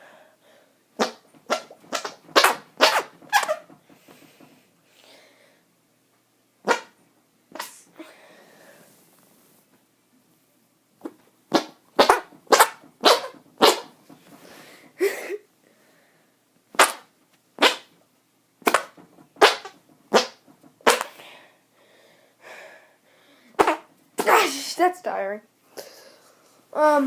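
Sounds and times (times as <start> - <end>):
arm farts: 1.0 - 4.5, 11.5 - 14.4, 18.6 - 21.2.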